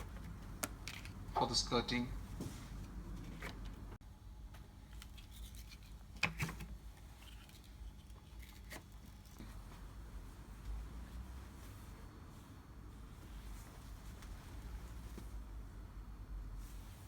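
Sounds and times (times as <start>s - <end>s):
cloth rubbing: 8.4s - 15.8s, 16.5s - 17.0s.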